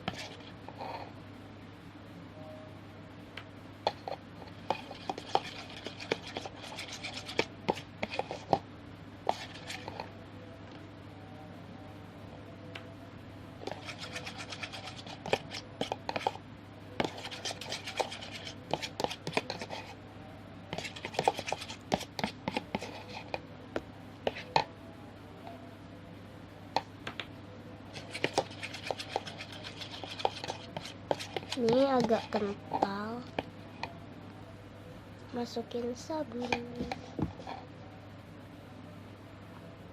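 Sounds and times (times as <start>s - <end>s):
slime stirred sticky scraping: 0.0s - 0.9s, 3.9s - 8.6s, 9.2s - 10.1s, 13.6s - 16.4s, 17.0s - 20.0s, 20.7s - 23.4s, 27.9s - 33.0s.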